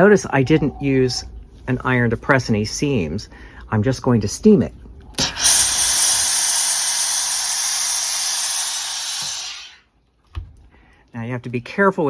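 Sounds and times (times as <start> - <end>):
steam iron hissing: 5.2 - 9.8.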